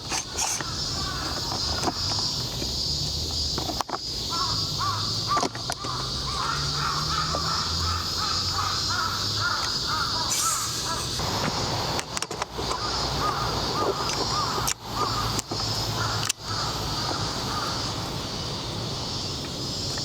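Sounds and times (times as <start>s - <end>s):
steady high hiss: 0.0s - 20.0s
crow cawing: 0.5s - 1.5s, 4.3s - 11.2s, 12.6s - 18.0s.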